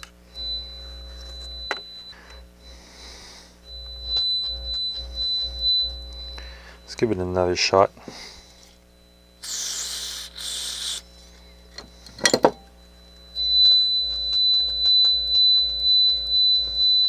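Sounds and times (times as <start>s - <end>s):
regular pulsing: 0.3s - 11.2s
aerosol spray hissing: 9.4s - 11.0s.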